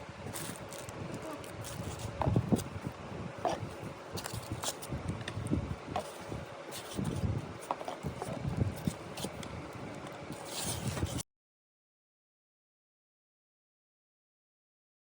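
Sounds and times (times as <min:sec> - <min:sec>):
handling rustling: 0:00.2 - 0:11.2.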